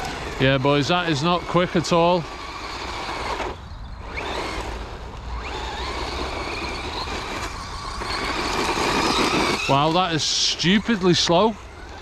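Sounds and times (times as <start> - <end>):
wind rumbling on microphone: 0.0 - 10.2
electric motor whine: 0.0 - 12.0.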